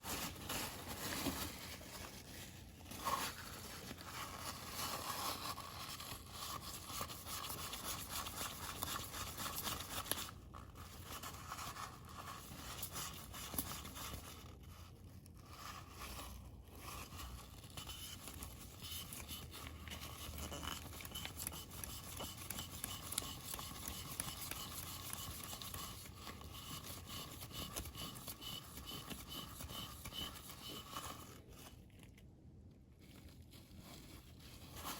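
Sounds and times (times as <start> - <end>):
scratchy scraping and rubbing: 0.0 - 14.8, 15.4 - 31.8.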